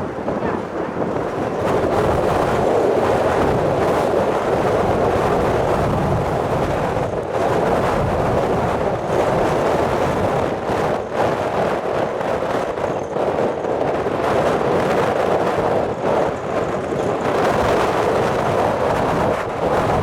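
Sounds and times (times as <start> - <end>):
jet engine roar: 0.0 - 12.9
wind buffeting microphone: 0.0 - 20.0.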